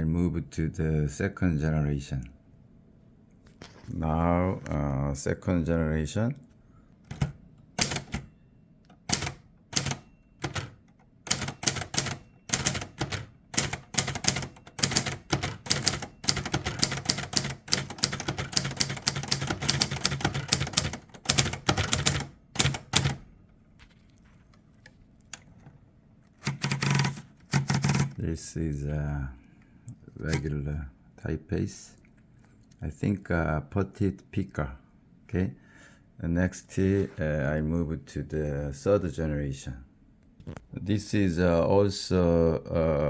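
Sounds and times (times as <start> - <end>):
loud typewriter mechanical sound: 7.1 - 8.3, 9.0 - 23.3, 26.4 - 28.2
typewriter keystrokes: 7.1 - 8.3, 8.9 - 23.3, 26.4 - 28.2.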